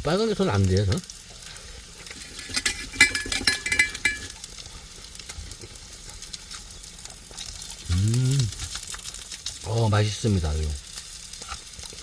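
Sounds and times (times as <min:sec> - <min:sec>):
meat sizzling on a grill: 0:00.0 - 0:03.3, 0:04.3 - 0:12.0
light ringing clinks: 0:02.2 - 0:04.4.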